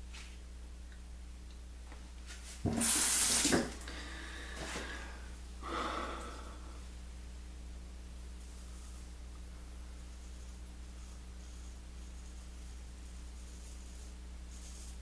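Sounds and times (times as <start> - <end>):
tap water gushing: 2.6 - 3.8.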